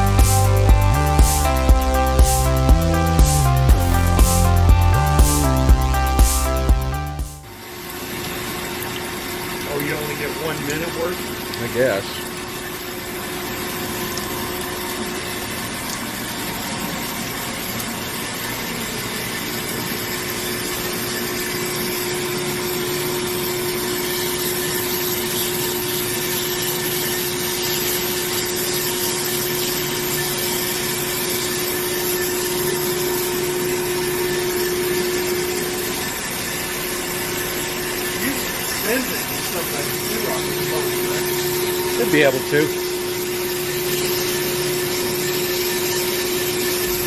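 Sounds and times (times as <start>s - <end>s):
band saw humming: 0.0s - 7.5s, 21.7s - 47.0s
steady tone: 0.0s - 7.5s, 32.3s - 47.0s.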